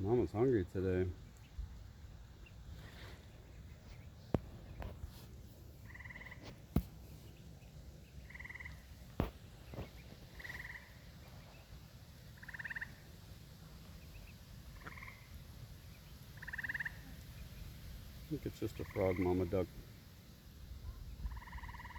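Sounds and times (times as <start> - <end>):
frog calling in pulsed trills: 5.9 - 6.4, 8.2 - 8.8, 10.3 - 11.0, 12.4 - 13.1, 14.8 - 15.3, 16.4 - 17.1, 21.3 - 21.9.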